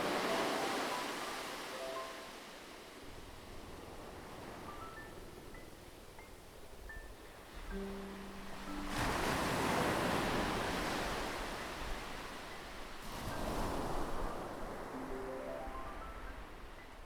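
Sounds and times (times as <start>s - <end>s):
soft piano notes: 0.0s - 2.5s, 4.6s - 10.8s, 14.2s - 17.0s
ocean waves washing onto shore: 0.0s - 6.2s, 7.2s - 17.0s.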